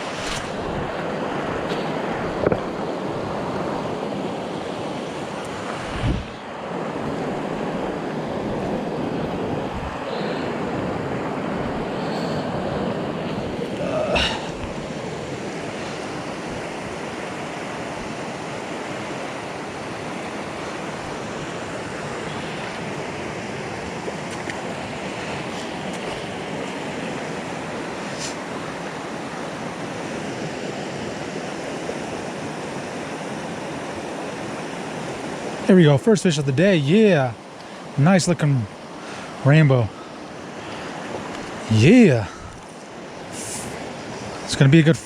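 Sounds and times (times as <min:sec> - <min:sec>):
river water rushing: 0:00.0 - 0:35.7, 0:36.3 - 0:45.0.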